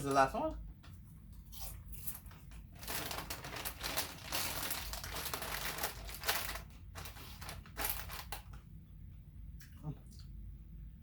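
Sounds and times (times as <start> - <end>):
chip bag crinkling: 1.6 - 8.6.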